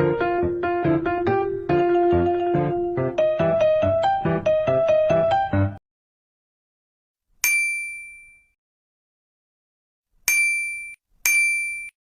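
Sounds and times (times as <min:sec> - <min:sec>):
small metal bell ding: 0:07.4 - 0:08.5, 0:10.3 - 0:11.9.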